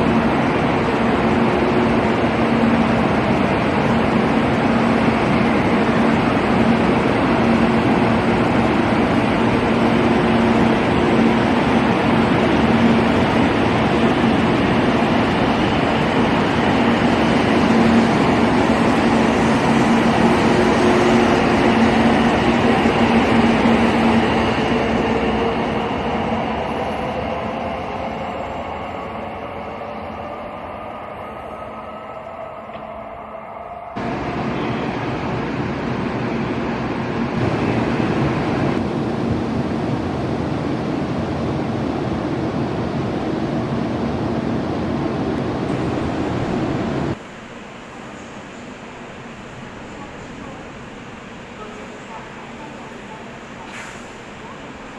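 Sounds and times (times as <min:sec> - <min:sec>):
wind-like noise: 0:37.0 - 0:54.9
electric train humming: 0:37.4 - 0:54.9.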